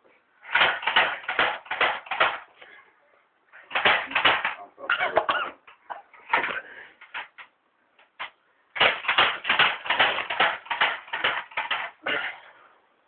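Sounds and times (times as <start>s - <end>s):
airsoft gun firing: 0.5s - 2.5s, 3.7s - 4.6s, 8.8s - 12.0s.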